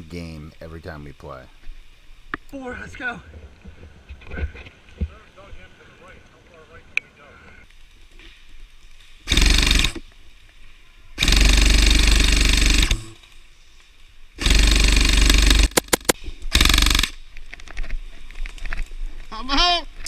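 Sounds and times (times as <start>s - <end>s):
airsoft rifle firing bursts: 9.3s - 10.0s, 11.2s - 13.2s, 14.4s - 17.2s.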